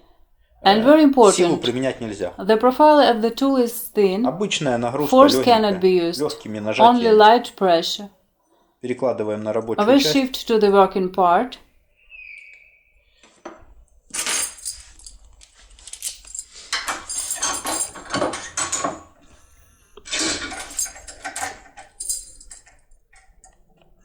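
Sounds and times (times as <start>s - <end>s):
metal foil crinkling: 14.1s - 18.4s.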